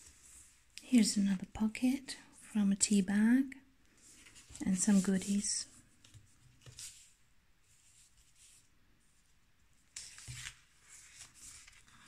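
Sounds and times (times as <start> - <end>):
paper pages rustling: 4.0 - 8.7, 9.8 - 12.0.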